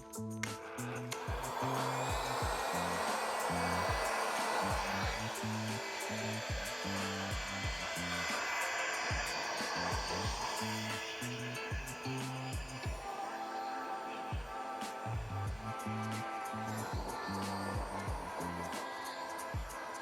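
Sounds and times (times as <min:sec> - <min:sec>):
music with bass and kick drum: 0:00.0 - 0:04.1, 0:04.7 - 0:05.8, 0:06.4 - 0:08.2, 0:11.7 - 0:13.0, 0:15.1 - 0:18.7
heat gun blowing: 0:00.0 - 0:20.0.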